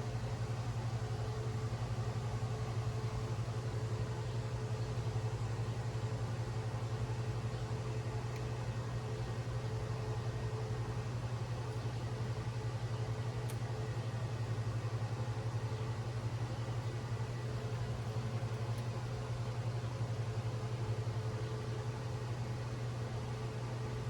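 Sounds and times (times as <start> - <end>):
faint small clicks: 8.3 - 8.5, 13.4 - 13.6, 18.5 - 18.9.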